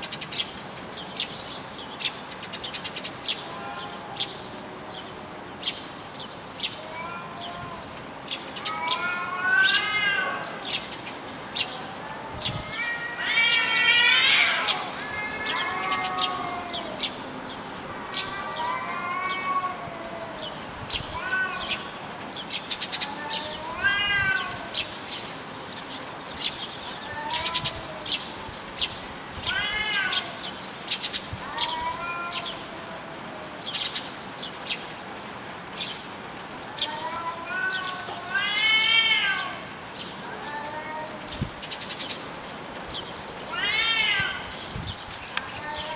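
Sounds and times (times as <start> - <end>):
cats yowling: 3.3 - 5.7, 6.6 - 25.2, 26.4 - 34.0, 36.6 - 41.6, 43.0 - 45.9.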